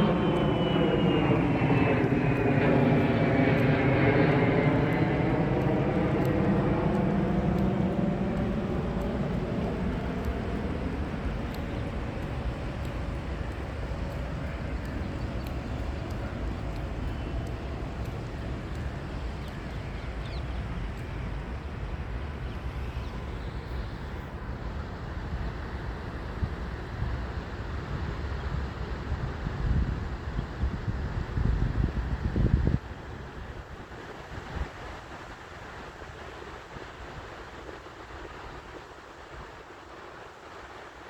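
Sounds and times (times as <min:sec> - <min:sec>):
droning engine: 0:00.0 - 0:24.4
outdoor low rumble: 0:00.0 - 0:24.5.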